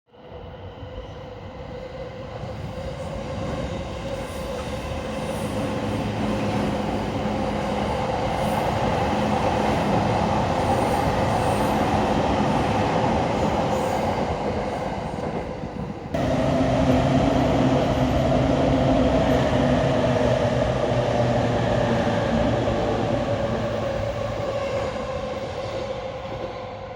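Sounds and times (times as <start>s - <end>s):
trains rumbling past: 0.6s - 26.9s.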